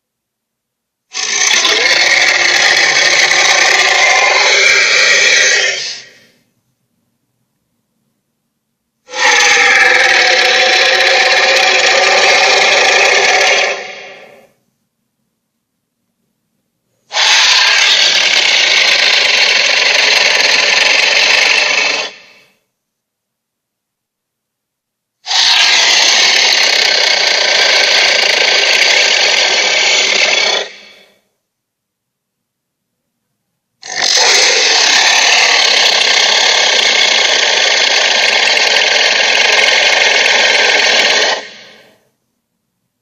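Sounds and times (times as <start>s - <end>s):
sea monster roar: 1.1s - 6.3s, 9.1s - 14.6s, 17.1s - 22.5s, 25.3s - 31.2s, 33.8s - 42.0s.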